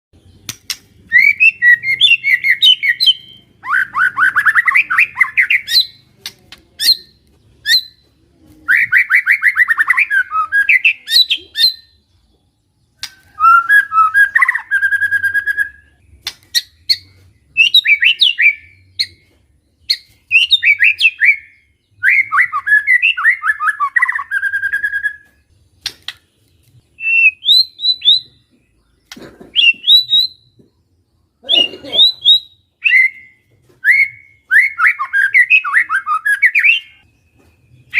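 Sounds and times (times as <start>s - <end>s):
songbird whistling and trilling: 0.2s - 6.0s, 6.8s - 8.1s, 8.7s - 12.0s, 13.0s - 30.6s, 31.5s - 37.9s
bird clicks: 0.4s - 0.9s, 16.2s - 16.6s.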